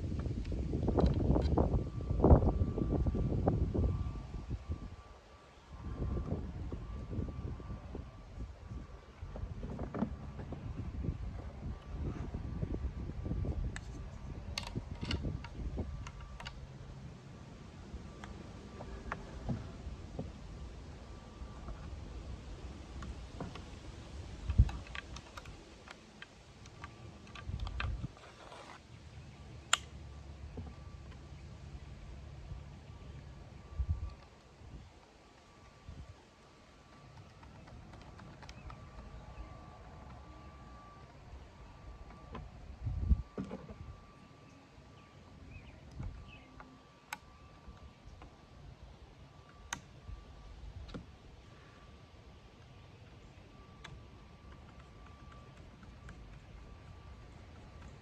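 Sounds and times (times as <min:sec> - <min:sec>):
metal clicks and knocks of rifle parts: 0:13.8 - 0:16.6.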